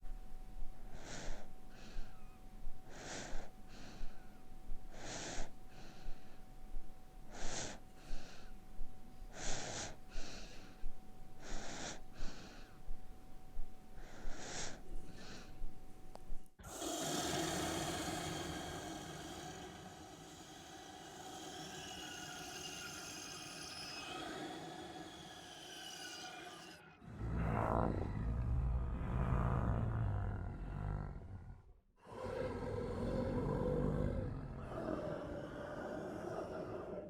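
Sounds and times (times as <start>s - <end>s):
man snoring: 16.6s - 23.1s, 27.0s - 34.7s
steady droning noise: 16.8s - 26.2s.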